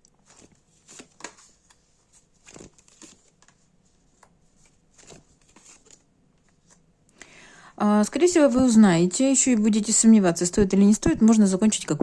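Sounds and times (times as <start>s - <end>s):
cards rustling and tapping: 0.1s - 6.8s.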